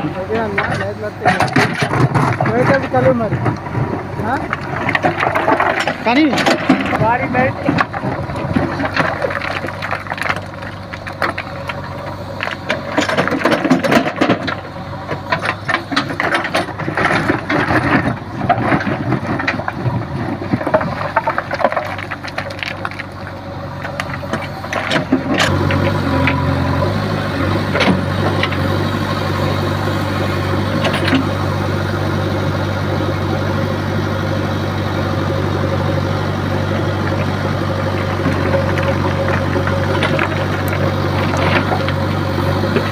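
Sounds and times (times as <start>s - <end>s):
clattering and rattling: 0.0s - 26.9s, 30.5s - 31.4s, 37.1s - 42.9s
diesel engine running: 0.0s - 42.9s.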